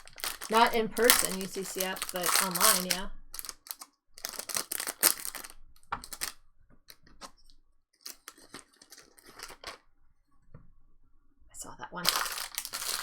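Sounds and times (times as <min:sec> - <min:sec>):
wrapper tearing and crinkling: 0:00.0 - 0:06.4, 0:08.0 - 0:09.8, 0:12.0 - 0:13.0.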